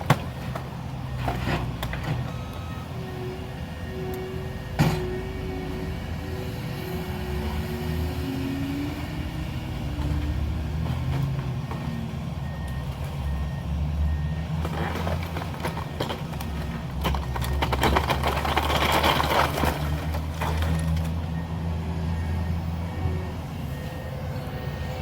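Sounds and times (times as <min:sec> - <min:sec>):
diesel engine revving: 0:00.0 - 0:25.0
wood cracking and crunching: 0:14.6 - 0:21.2.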